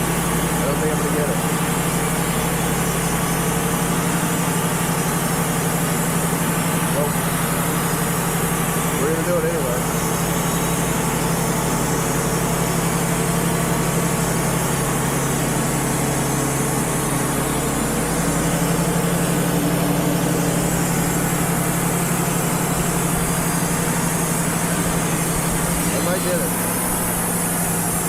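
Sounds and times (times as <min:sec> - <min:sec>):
sawmill engine running: 0:00.0 - 0:28.0.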